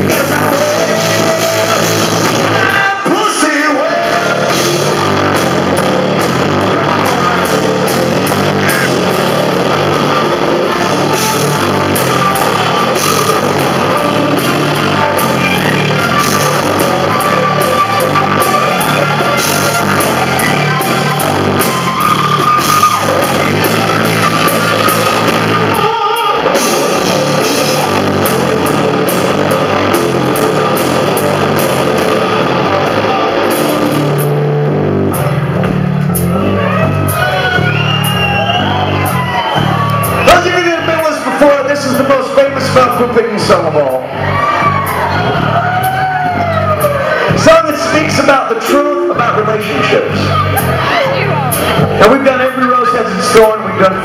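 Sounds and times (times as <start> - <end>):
person singing: 0.0 - 4.8, 25.7 - 26.9
live rock band playing: 0.0 - 54.0.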